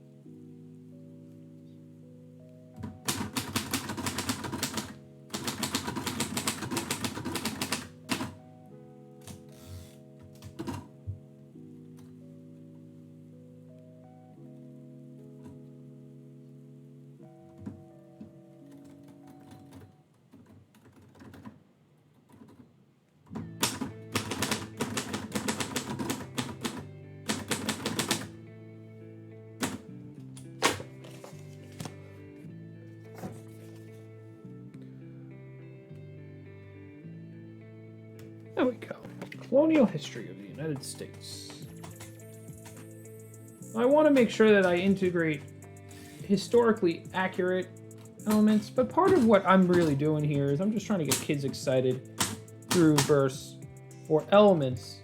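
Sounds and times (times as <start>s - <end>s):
soft sustained chords music: 0.0s - 20.0s, 23.4s - 55.0s
typewriter keystrokes: 3.0s - 8.4s, 23.6s - 28.3s, 29.6s - 29.8s, 48.2s - 50.1s, 51.0s - 53.3s.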